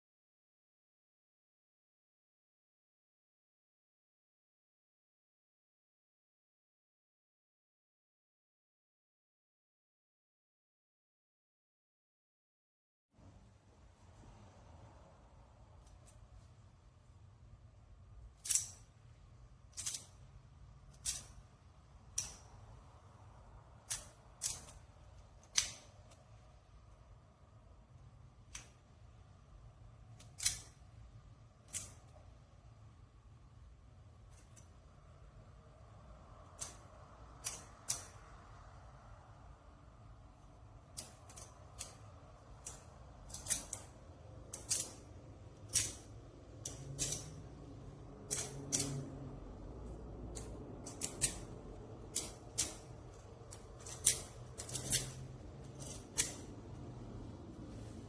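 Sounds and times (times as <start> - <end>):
plastic magnetic cubes clicking: 18.4 - 18.9, 19.7 - 20.3, 20.9 - 22.8, 23.8 - 26.4, 30.1 - 32.3, 36.5 - 36.8, 37.4 - 38.3, 40.8 - 49.3, 50.3 - 56.7.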